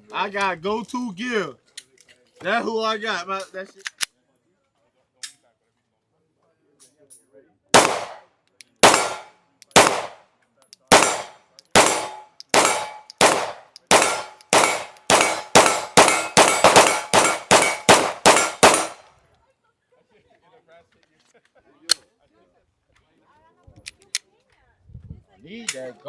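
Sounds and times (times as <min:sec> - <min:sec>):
gunshots: 0:07.8 - 0:08.2, 0:08.8 - 0:10.2, 0:10.9 - 0:19.1
metallic ringing of steel target: 0:08.8 - 0:10.1, 0:10.9 - 0:19.0.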